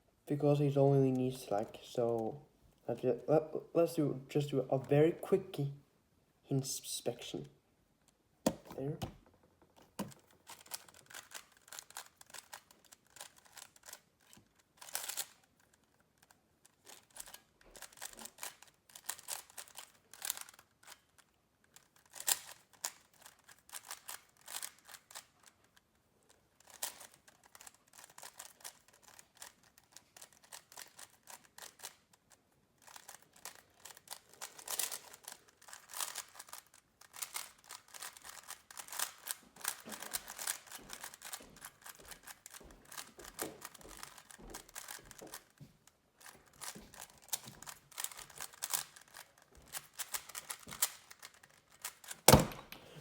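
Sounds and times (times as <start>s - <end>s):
puzzle cube clicking: 8.5s - 9.2s, 9.8s - 25.8s, 26.6s - 45.6s, 46.2s - 52.8s.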